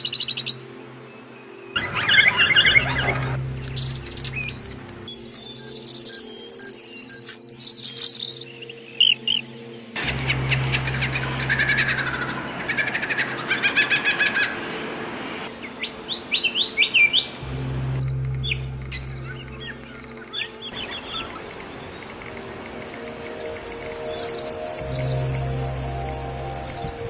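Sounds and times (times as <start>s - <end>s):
birds chirping and calling: 1.8s - 14.9s, 15.6s - 27.0s
low steady hum: 10.0s - 13.4s, 17.4s - 27.0s.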